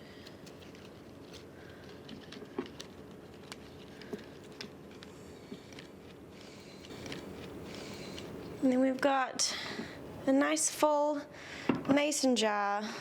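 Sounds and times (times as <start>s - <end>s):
small handling noises: 0.1s - 10.0s.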